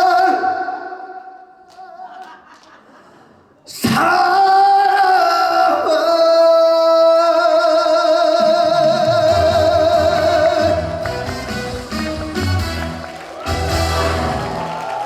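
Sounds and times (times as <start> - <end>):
man singing long note with vibrato: 3.7 - 11.2
backing music with bass and drums: 8.9 - 14.6.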